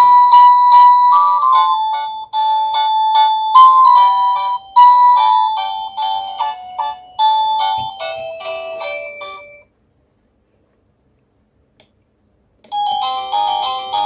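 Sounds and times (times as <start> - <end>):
doorbell chime melody: 0.0 - 9.7, 12.7 - 14.0
click: 11.2 - 12.0.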